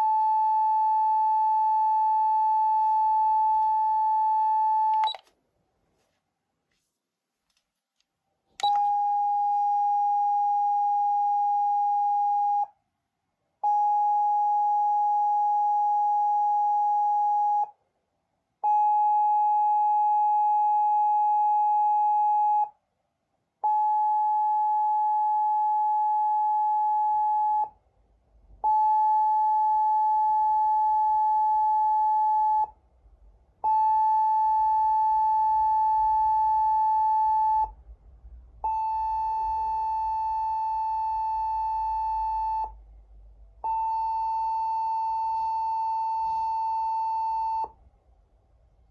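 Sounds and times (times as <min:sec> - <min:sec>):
click: 0:04.9 - 0:05.4, 0:08.6 - 0:08.9
steady high siren beep: 0:38.7 - 0:42.8, 0:43.7 - 0:47.7.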